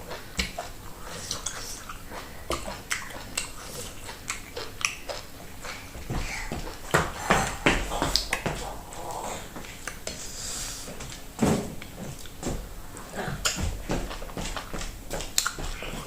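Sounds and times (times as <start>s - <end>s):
wet chewing and mouth smacks: 0.0s - 6.9s, 8.1s - 8.6s, 9.6s - 10.2s, 13.0s - 16.0s
sharp mouth clicks: 0.4s - 6.9s, 15.4s - 15.7s.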